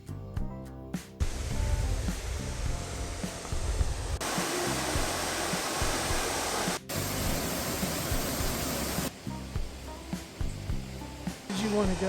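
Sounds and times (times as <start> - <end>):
background music: 0.0 - 12.0
waterfall roaring: 3.1 - 9.2.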